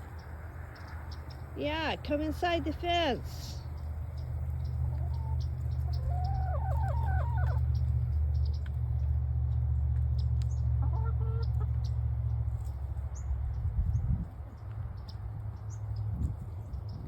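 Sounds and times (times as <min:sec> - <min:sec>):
hens clucking: 0:01.1 - 0:12.0.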